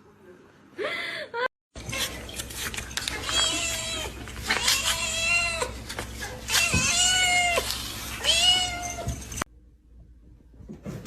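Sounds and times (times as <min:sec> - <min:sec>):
cat meowing: 0:06.5 - 0:09.1.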